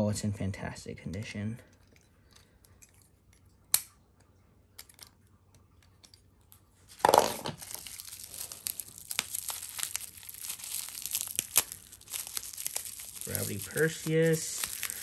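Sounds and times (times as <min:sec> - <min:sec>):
packaging wrap ripping: 0:06.9 - 0:15.0
wrap crinkling: 0:06.9 - 0:15.0.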